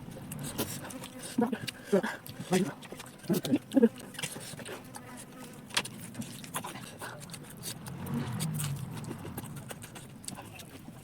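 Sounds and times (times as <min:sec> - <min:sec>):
chewing crunchy food: 0:00.0 - 0:11.0.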